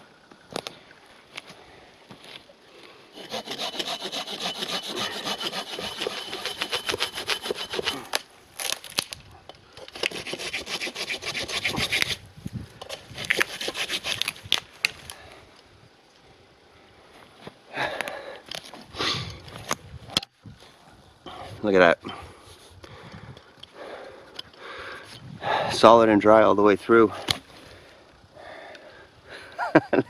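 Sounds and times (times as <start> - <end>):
hand saw cutting log: 3.1 - 8.8, 9.8 - 12.2, 12.8 - 14.4.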